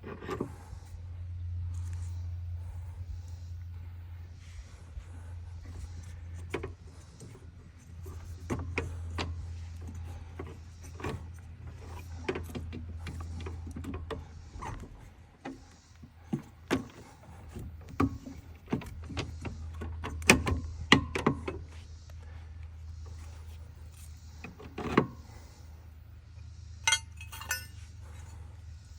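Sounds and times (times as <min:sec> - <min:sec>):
steady low hum: 0:00.0 - 0:28.9
tools and metal parts clicking: 0:26.8 - 0:28.3
sharp metal knocks: 0:26.9 - 0:27.8.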